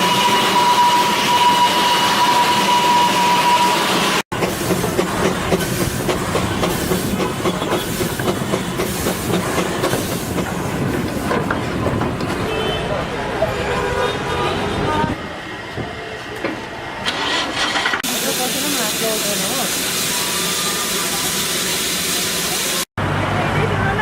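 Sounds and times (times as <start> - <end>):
train wheels rumbling and clicking: 4.3 - 12.5.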